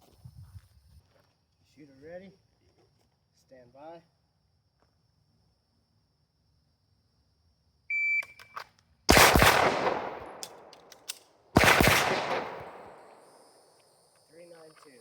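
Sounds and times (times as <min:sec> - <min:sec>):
pistol shots echoing: 0:09.1 - 0:13.5.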